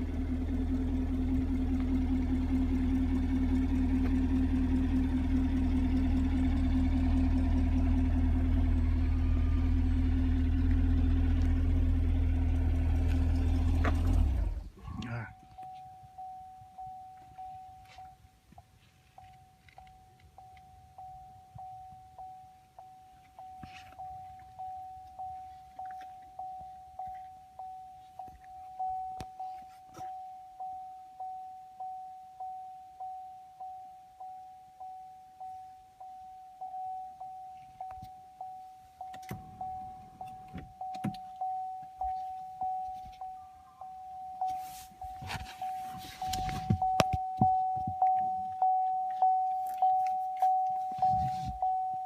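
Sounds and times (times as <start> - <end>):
car warning chime dinging: 0.0 - 52.0
rustling noise: 23.2 - 24.6, 44.4 - 48.2, 49.1 - 51.8.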